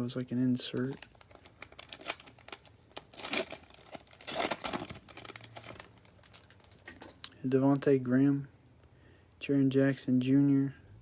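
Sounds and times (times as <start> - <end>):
plastic wrapper crinkling: 0.6 - 7.3.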